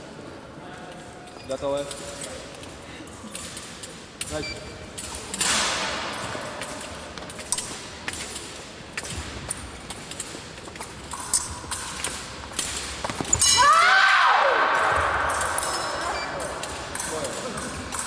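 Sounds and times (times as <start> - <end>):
loud rising shout: 13.6 - 15.0.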